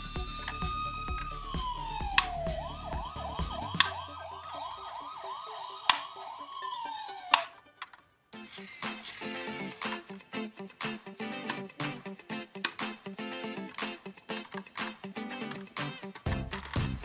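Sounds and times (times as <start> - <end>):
emergency siren wailing and yelping: 1.3 - 7.6
sharp clicks: 2.0 - 6.7, 7.3 - 10.1, 11.5 - 15.8.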